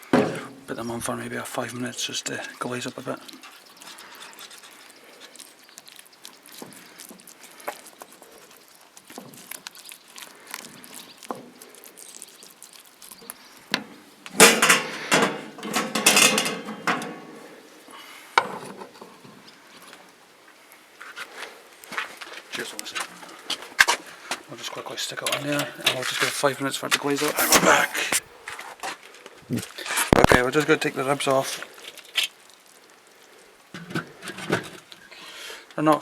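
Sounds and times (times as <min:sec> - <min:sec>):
barbecue utensils clinking: 0:13.8 - 0:17.4.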